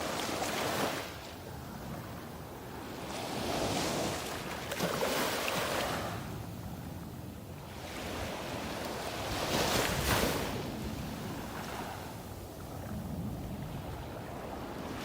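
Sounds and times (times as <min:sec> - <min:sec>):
sea waves washing onto sand: 0:00.0 - 0:01.3, 0:07.7 - 0:15.0.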